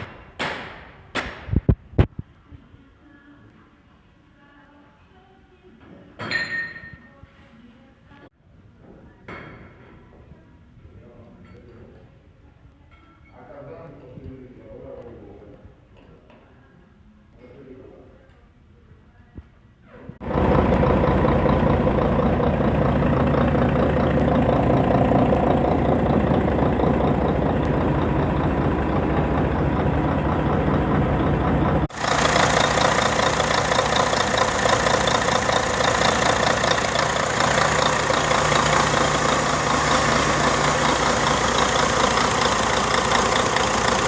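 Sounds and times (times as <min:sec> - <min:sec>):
diesel engine idling: 0:20.2 - 0:44.0.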